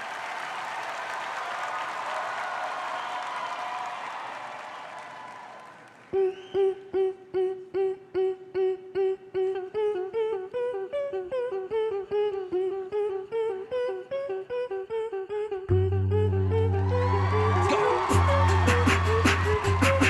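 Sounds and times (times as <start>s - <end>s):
pulsed hummed vocal line: 6.2s - 20.0s
deep bass: 15.7s - 20.0s.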